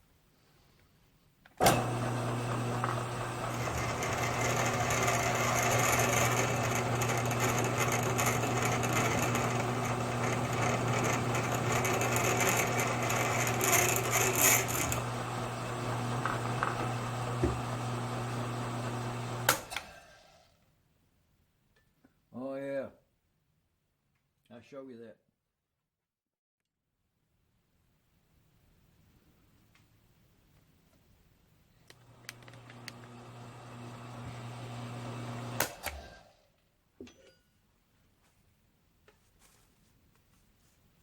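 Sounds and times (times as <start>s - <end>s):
drill bit cutting cast iron: 1.6s - 20.0s, 32.0s - 36.2s
drill press motor hum: 1.6s - 20.5s, 31.9s - 36.3s.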